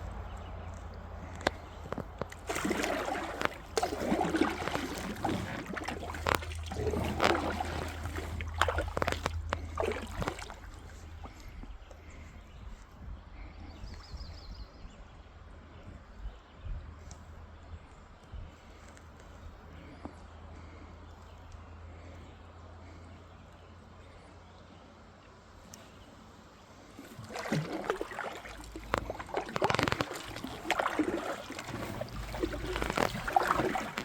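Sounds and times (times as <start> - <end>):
water splashing against kayak: 0.0 - 12.6, 26.8 - 34.0.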